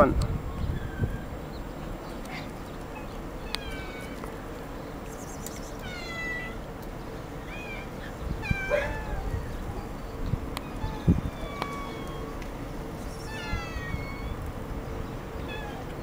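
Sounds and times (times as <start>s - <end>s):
faint steady hum: 0.0s - 16.0s
cat meowing: 5.8s - 6.6s, 7.4s - 9.4s, 10.7s - 12.3s, 13.2s - 14.4s, 15.4s - 15.9s.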